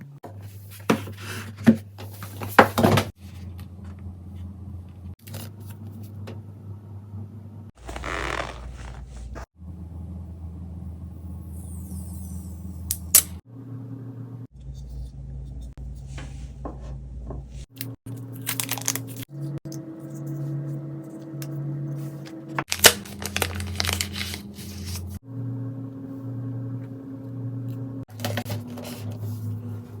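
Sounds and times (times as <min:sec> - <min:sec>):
steady low hum: 0:03.1 - 0:07.7, 0:09.0 - 0:30.0
packaging rustling and tearing: 0:18.3 - 0:19.2, 0:22.7 - 0:25.2.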